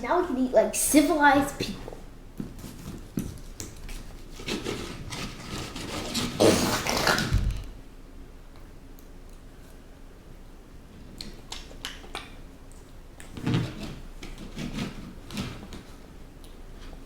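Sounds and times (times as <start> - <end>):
eating noises: 6.1 - 7.8.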